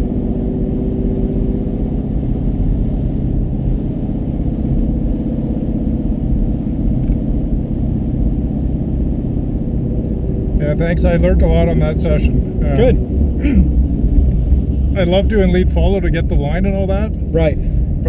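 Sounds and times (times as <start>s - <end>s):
car engine running from inside: 0.0s - 18.0s.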